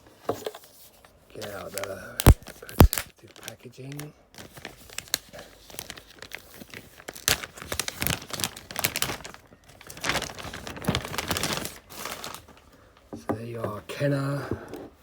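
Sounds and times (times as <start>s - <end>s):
packaging crumpling and crinkling: 1.4s - 12.7s.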